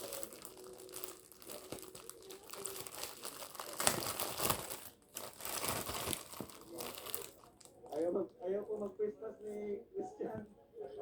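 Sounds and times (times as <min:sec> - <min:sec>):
food crackling and crinkling: 0:00.0 - 0:08.3.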